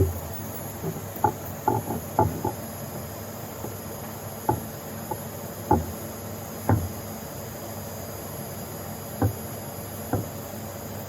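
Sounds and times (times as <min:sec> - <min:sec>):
short knocks and taps: 0:00.0 - 0:02.6, 0:04.5 - 0:06.0, 0:06.7 - 0:07.0, 0:09.2 - 0:09.4, 0:10.1 - 0:10.4.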